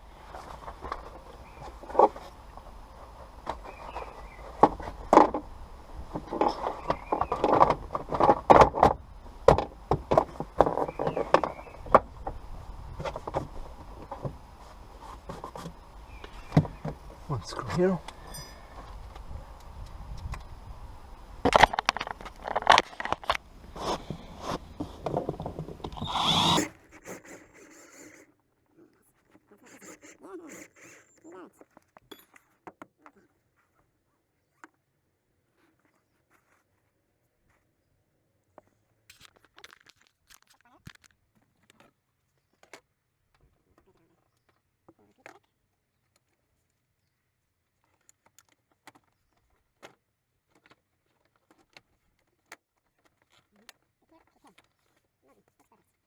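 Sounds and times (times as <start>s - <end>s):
electric screwdriver whirring: 25.9s - 26.8s
small hard parts clicking: 39.1s - 41.9s.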